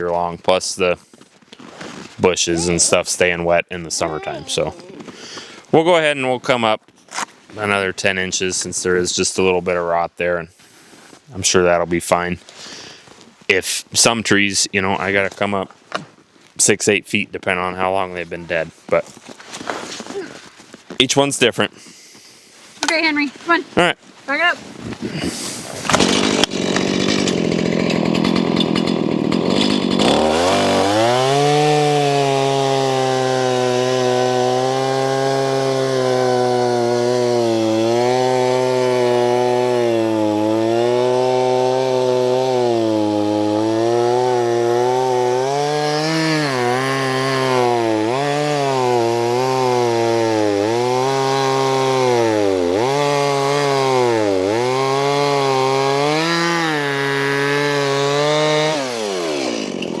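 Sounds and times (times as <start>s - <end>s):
chainsaw cutting through log: 2.4s - 3.2s, 4.0s - 5.6s, 25.1s - 60.0s.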